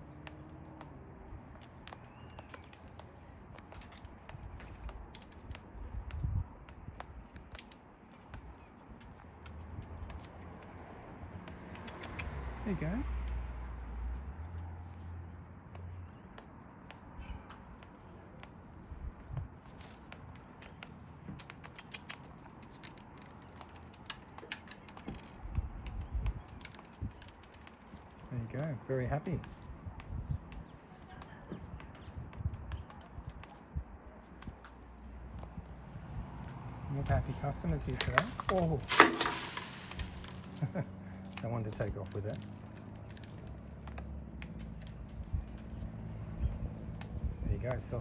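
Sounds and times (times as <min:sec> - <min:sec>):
parrot beaks cracking seed: 0:00.0 - 0:12.6, 0:37.7 - 0:45.9.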